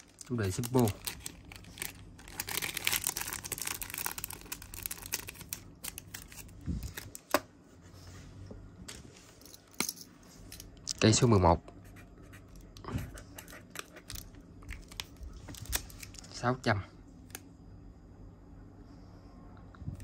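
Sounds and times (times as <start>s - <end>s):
plastic packaging crinkling: 0.0s - 7.3s, 13.5s - 16.3s.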